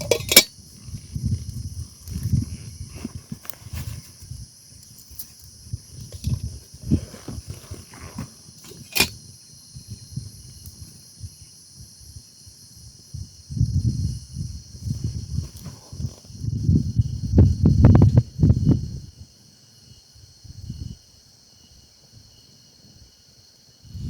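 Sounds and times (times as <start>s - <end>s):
insects chirring: 0.0s - 24.0s
low rustles and thumps: 5.9s - 9.1s.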